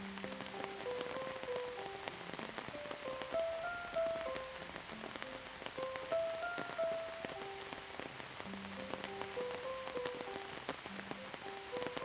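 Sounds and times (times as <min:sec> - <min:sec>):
rain drops clicking: 0:00.0 - 0:12.0
soft melody of held notes: 0:00.0 - 0:12.0.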